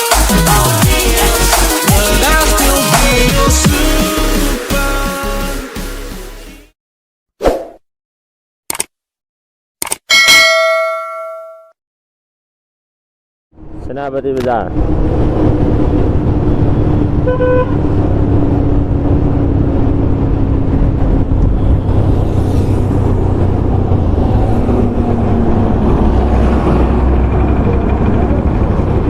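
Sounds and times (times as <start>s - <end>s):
motorcycle engine and road rumble: 13.6s - 29.0s
vehicle horn toot: 17.2s - 17.8s.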